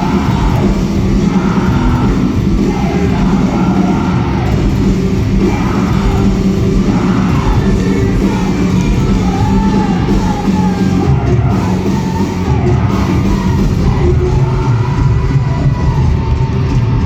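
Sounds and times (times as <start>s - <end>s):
person singing: 0.0s - 16.5s
rock band playing live: 0.0s - 17.0s.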